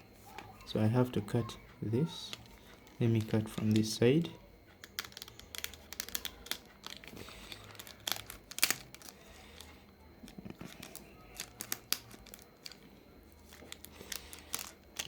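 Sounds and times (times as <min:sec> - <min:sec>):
sharp crackly clicks: 0:04.7 - 0:09.7
packaging crinkling: 0:04.8 - 0:15.0.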